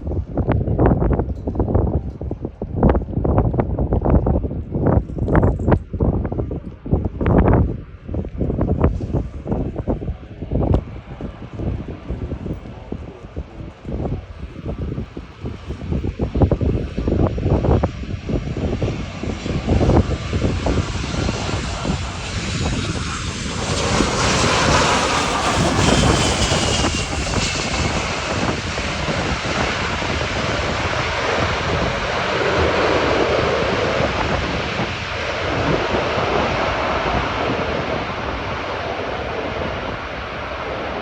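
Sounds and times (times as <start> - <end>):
wind buffeting microphone: 0.0 - 41.0
jet airliner engines roaring: 6.0 - 41.0
thin engine whine: 19.5 - 38.5.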